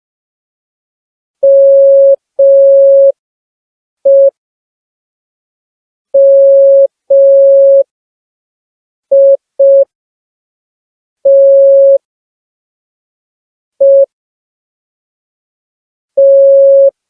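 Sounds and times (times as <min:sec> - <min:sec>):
morse code beeps: 0:04.1 - 0:04.3, 0:06.2 - 0:07.8, 0:09.1 - 0:09.8, 0:11.3 - 0:12.0, 0:16.2 - 0:16.9.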